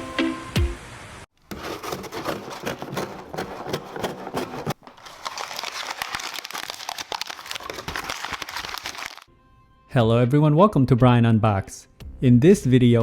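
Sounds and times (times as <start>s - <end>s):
dense crinkling and clicking: 1.6s - 9.3s.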